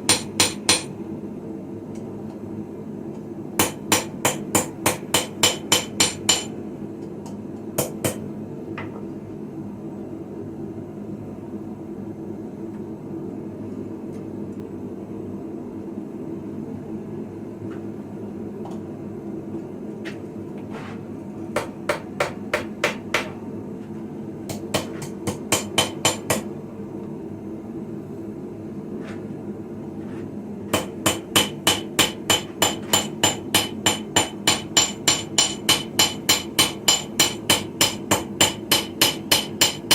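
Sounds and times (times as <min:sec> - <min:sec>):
steady low hum: 0:00.0 - 0:39.9
hammer striking steel on anvil: 0:00.1 - 0:00.9, 0:03.6 - 0:06.5, 0:24.5 - 0:26.5, 0:30.7 - 0:39.9.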